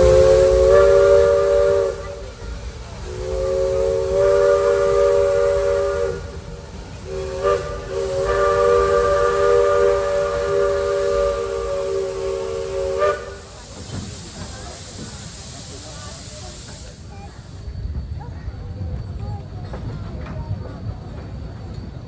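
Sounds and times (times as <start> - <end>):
steam locomotive chime whistle: 0.0 - 2.4, 3.1 - 14.2
steam hiss: 0.0 - 20.0.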